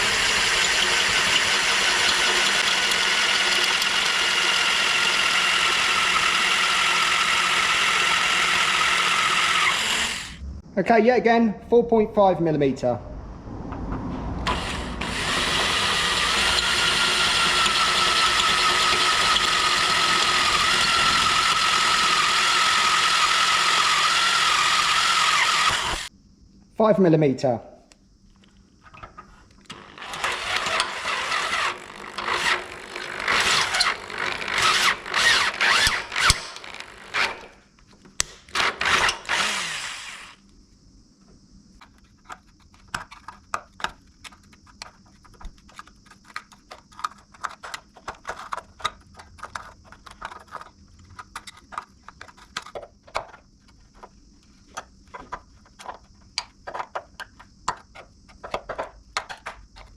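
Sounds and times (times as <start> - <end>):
power drill boring into metal: 0.0 - 10.4, 14.5 - 26.1, 29.7 - 37.5, 38.5 - 40.4.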